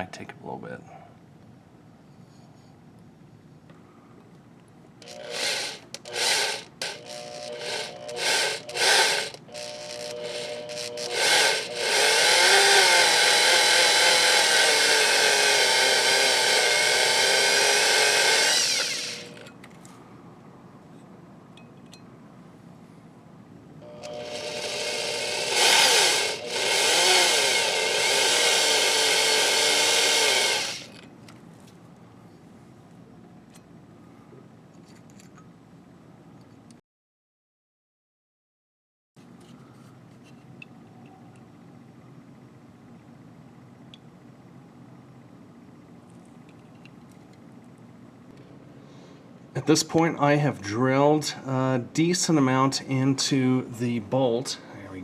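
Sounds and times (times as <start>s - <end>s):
drill motor whine: 5.0s - 19.5s, 23.8s - 31.0s
drill bit grinding into steel: 5.0s - 19.6s, 23.8s - 31.0s.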